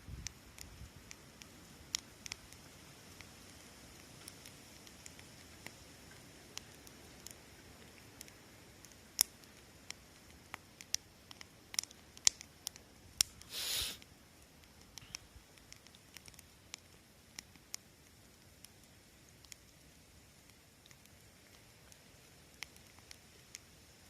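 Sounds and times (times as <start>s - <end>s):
fire pops and snaps: 0.0s - 24.0s
wood fire crackling: 0.0s - 24.0s
brief hiss: 13.4s - 14.1s.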